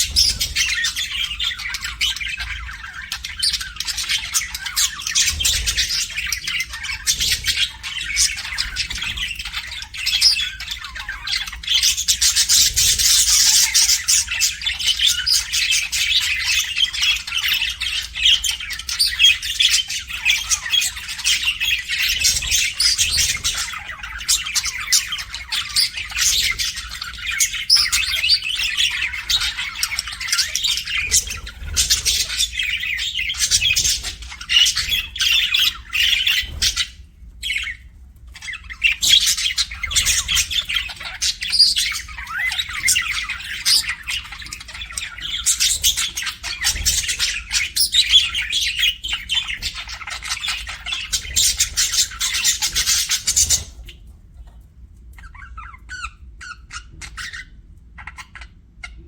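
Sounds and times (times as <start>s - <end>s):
budgerigars chirping and chattering: 0.0s - 59.0s.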